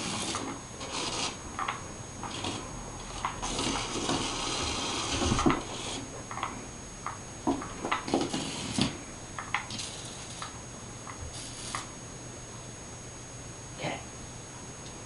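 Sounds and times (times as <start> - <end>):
rubbing and scraping: 0.0 - 1.4, 2.2 - 2.7, 3.4 - 6.1, 8.0 - 9.0.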